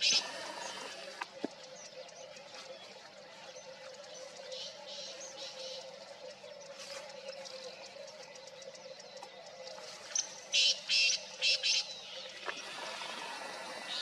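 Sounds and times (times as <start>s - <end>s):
distant bird calling: 0.0s - 2.2s, 10.1s - 14.0s.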